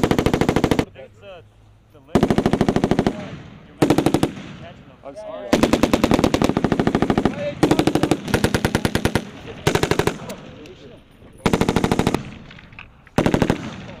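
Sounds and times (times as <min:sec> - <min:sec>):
machine gun firing bursts: 0:00.0 - 0:00.9, 0:02.2 - 0:04.6, 0:05.5 - 0:10.4, 0:11.4 - 0:12.5, 0:13.2 - 0:14.0.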